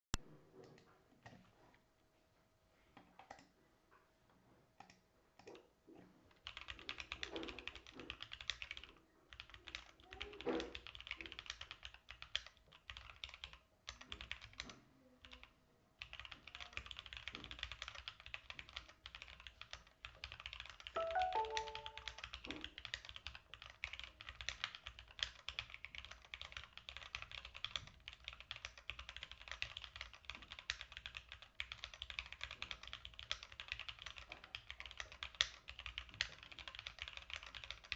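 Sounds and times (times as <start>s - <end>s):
mechanical keyboard typing: 6.3s - 37.9s
brief pitched sound: 21.0s - 22.2s.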